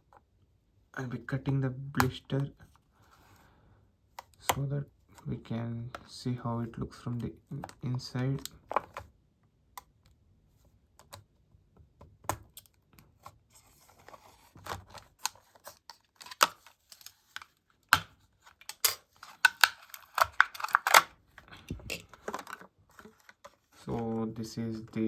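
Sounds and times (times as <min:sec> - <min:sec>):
plastic blister pack clicks and crackles: 0:14.6 - 0:23.9.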